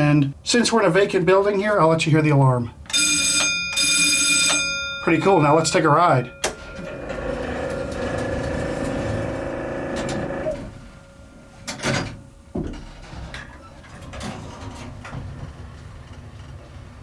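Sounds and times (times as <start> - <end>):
elevator electric hum: 2.8 - 17.0
elevator rumble: 4.6 - 17.0
elevator door clunks: 6.3 - 16.1.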